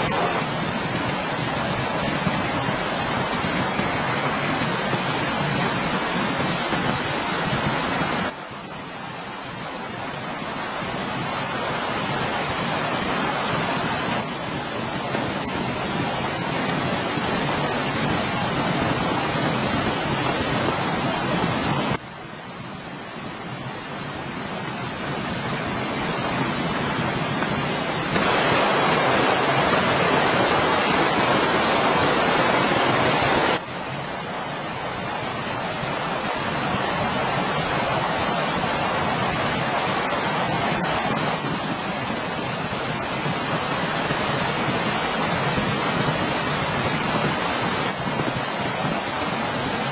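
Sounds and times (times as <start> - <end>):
steady rain hiss: 0.0 - 49.9.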